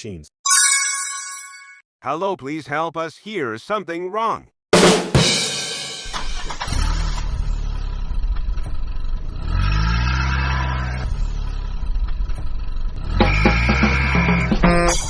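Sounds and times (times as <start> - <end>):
vehicle engine revving: 6.1 - 14.8.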